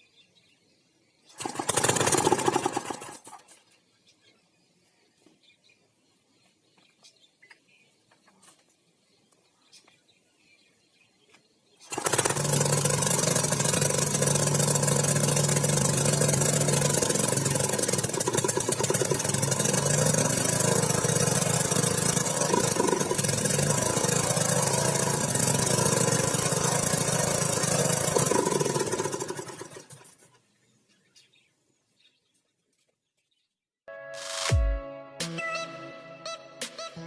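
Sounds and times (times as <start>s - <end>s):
stationary engine running: 1.4s - 3.3s, 11.9s - 30.2s.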